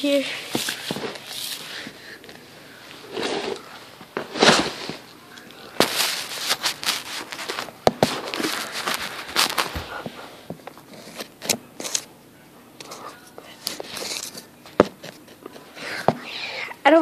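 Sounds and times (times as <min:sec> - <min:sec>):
rustling: 0:00.1 - 0:12.1.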